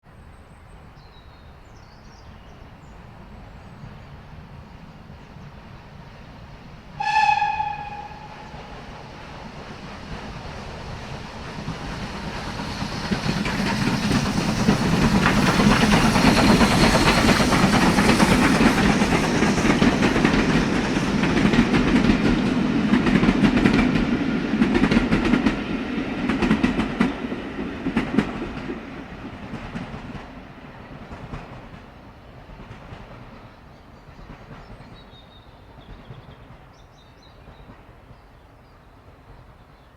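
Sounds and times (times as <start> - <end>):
train rumbling: 0.2 - 39.9
train horn blast: 7.0 - 8.8.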